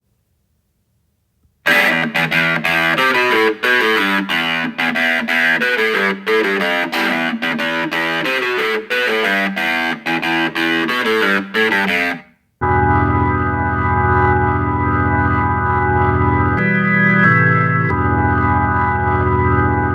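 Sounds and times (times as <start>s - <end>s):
distorted electric guitar riff: 1.7s - 19.9s
held organ chord: 1.7s - 19.9s.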